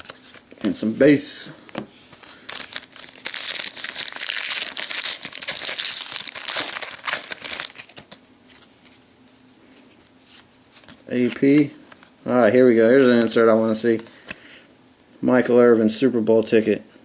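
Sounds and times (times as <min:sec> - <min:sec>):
foil wrappers crinkling and tearing: 0:02.2 - 0:08.7.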